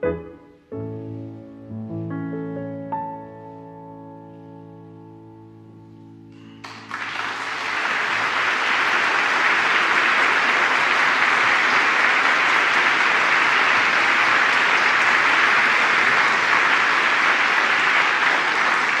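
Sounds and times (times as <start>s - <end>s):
audience applause: 6.4s - 19.0s.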